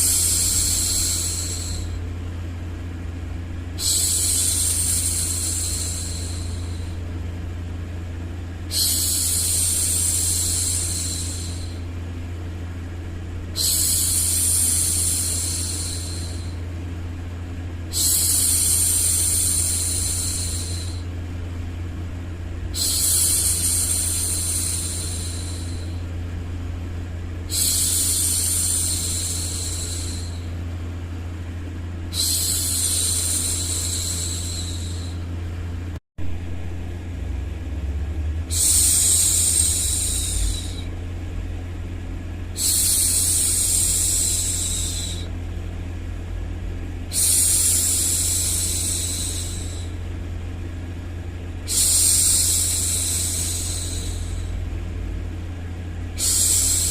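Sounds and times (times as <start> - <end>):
low white-noise rumble: 0.0 - 56.9
woman shushing: 8.7 - 11.8, 32.1 - 35.2, 38.5 - 40.9, 47.1 - 50.0, 51.7 - 54.6, 56.2 - 56.9.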